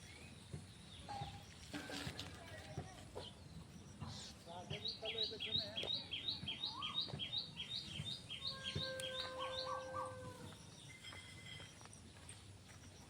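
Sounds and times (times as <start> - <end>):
small bird chirping: 0.0 - 13.0
faint steady tone: 8.8 - 13.0.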